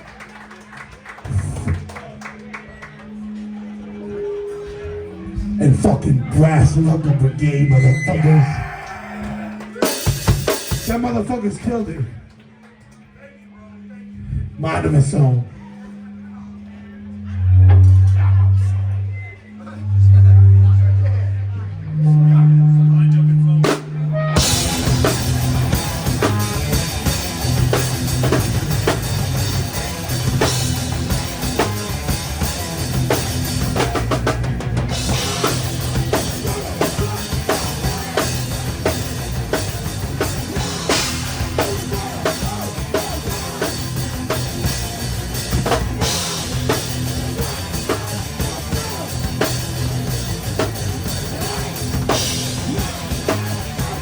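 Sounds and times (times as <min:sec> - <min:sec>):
live rock band playing: 0:09.8 - 0:11.3, 0:23.3 - 0:54.0.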